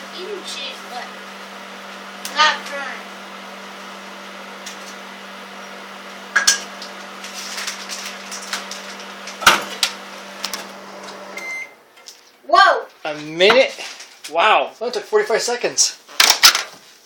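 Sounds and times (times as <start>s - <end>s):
microwave oven humming: 0.0s - 12.0s.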